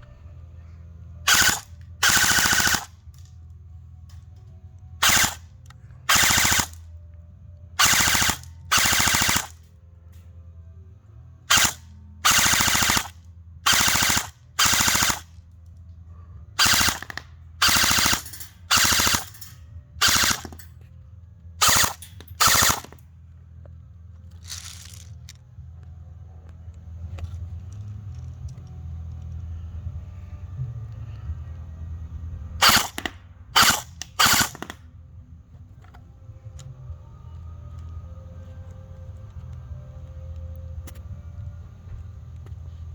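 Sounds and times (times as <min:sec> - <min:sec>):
airsoft rifle automatic bursts: 0:01.3 - 0:02.9, 0:05.0 - 0:05.4, 0:06.1 - 0:06.8, 0:07.8 - 0:09.6, 0:11.5 - 0:15.3, 0:16.6 - 0:19.3, 0:20.0 - 0:20.6, 0:21.6 - 0:23.0, 0:32.6 - 0:34.8.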